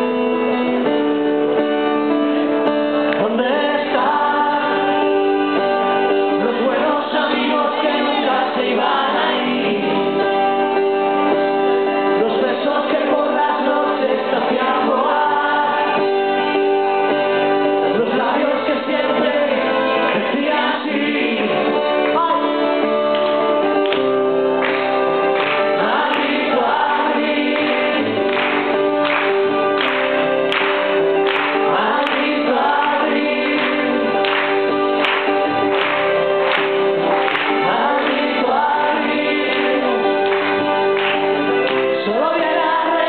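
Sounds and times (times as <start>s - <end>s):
live band playing slow song: 0.0s - 43.0s
voices singing together: 3.2s - 10.8s, 12.1s - 23.0s, 24.8s - 43.0s.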